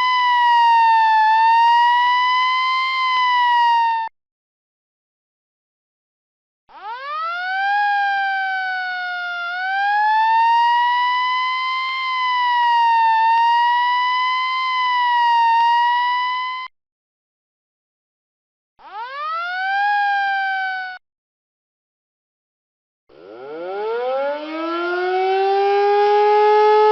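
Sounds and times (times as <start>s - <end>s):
siren wailing: 0.0s - 4.1s, 6.7s - 16.7s, 18.8s - 21.0s, 23.1s - 26.9s.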